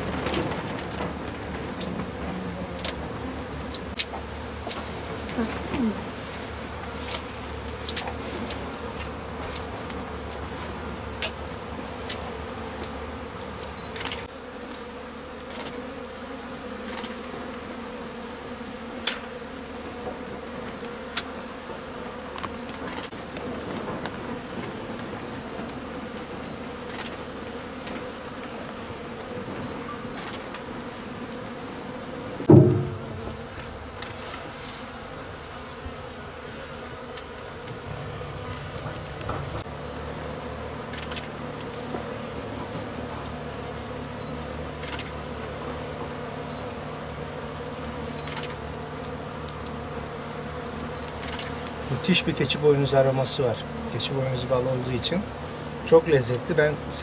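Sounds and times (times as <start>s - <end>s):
honeybees buzzing in a swarm: 0.0s - 57.0s
sharp clicks: 13.6s - 14.3s, 40.9s - 41.7s, 48.2s - 48.6s, 51.0s - 51.6s
low thump: 32.4s - 33.6s.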